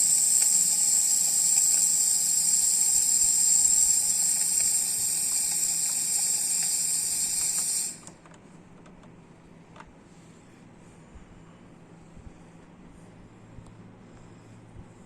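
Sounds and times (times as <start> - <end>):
espresso steam wand hissing: 0.0 - 8.1.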